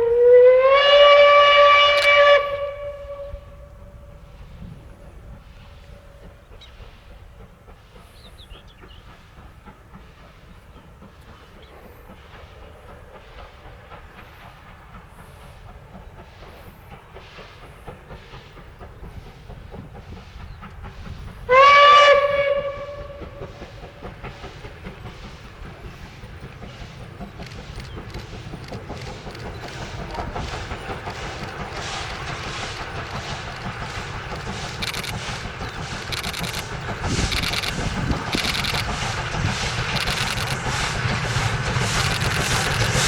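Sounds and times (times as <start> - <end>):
steam whistle blast: 0.0 - 4.3, 21.5 - 23.7
steam locomotive exhaust beats: 0.0 - 43.0.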